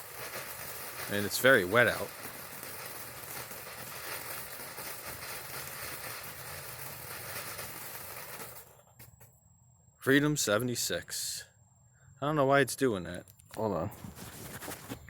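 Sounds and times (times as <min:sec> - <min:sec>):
firework fountain hissing: 0:00.0 - 0:09.3.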